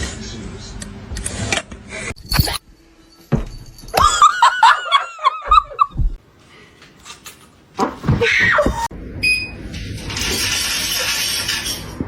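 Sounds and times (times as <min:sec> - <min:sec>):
person giggling: 0:04.0 - 0:06.2.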